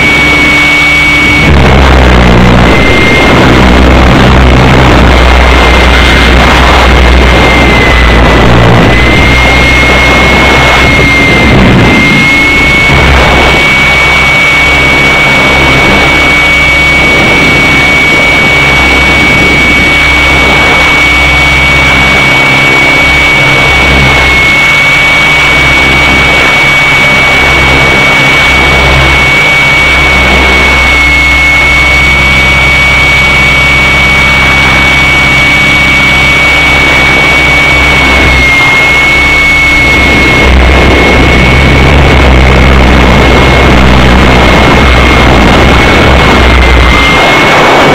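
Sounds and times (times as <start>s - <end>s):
radio-controlled helicopter whine: 0.0s - 47.9s.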